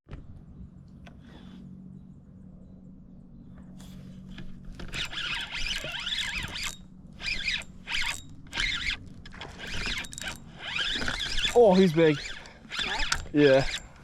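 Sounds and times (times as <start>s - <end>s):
fishing reel clicking and whirring: 4.8s - 14.0s.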